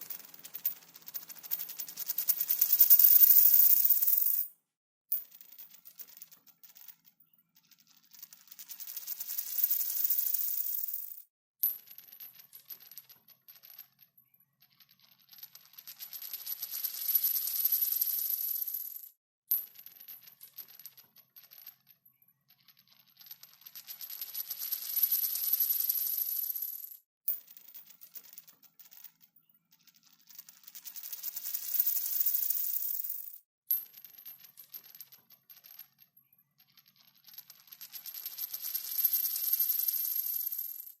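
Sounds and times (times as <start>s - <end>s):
coin spinning and rattling: 0.0s - 4.5s, 5.1s - 21.9s, 22.5s - 41.0s.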